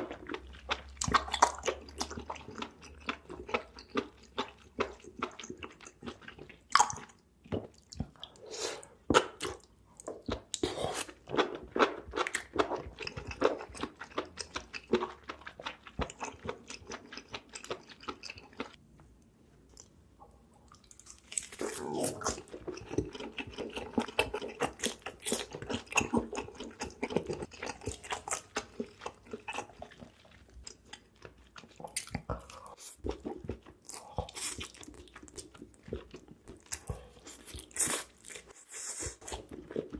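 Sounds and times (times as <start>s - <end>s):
chewing and biting: 20.8s - 39.9s.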